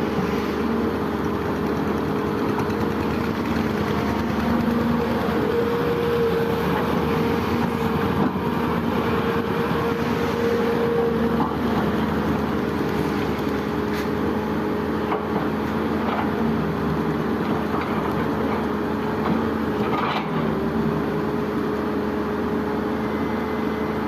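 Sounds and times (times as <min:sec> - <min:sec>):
diesel engine running: 0:00.0 - 0:24.0.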